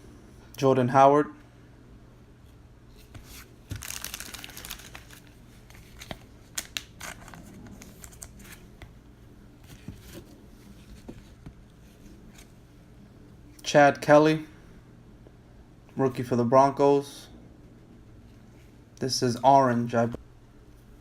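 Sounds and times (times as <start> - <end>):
cards being shuffled: 2.9 - 8.9
plastic wrapping crinkling: 3.6 - 8.6.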